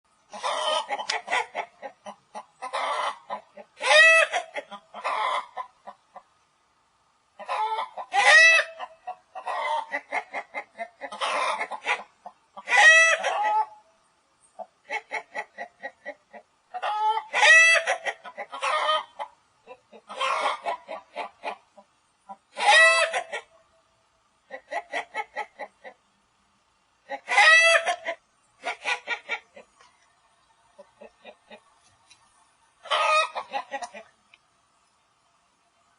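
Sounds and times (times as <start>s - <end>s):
chicken squawk: 0.3s - 6.0s, 7.4s - 13.8s, 14.8s - 21.6s, 22.3s - 23.5s, 27.0s - 29.7s, 32.8s - 34.1s
chicken clucking: 0.3s - 6.3s, 7.4s - 13.9s, 14.6s - 23.6s, 24.4s - 26.2s, 27.0s - 32.0s, 32.8s - 34.4s.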